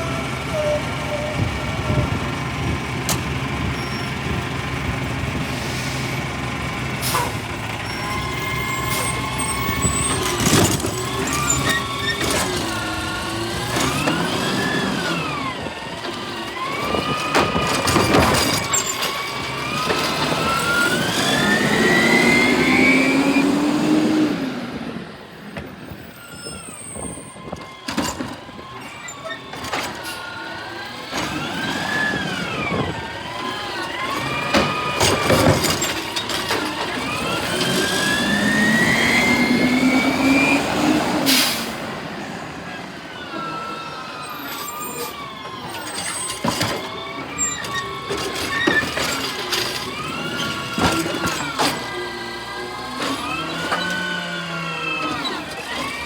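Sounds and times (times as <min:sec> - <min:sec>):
garbage truck engine whining: 0:00.0 - 0:56.0.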